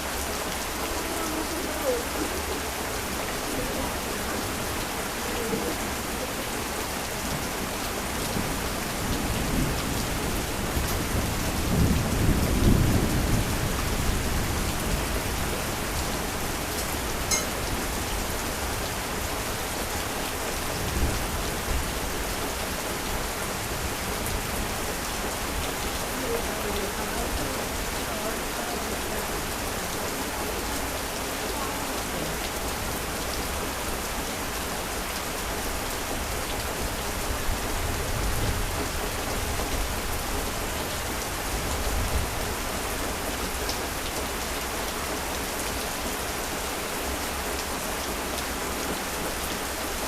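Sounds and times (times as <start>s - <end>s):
heavy rain falling: 0.0s - 50.0s.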